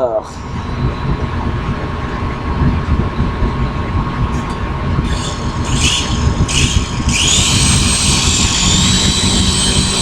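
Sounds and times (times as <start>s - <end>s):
model helicopter motor whine: 5.0s - 10.0s.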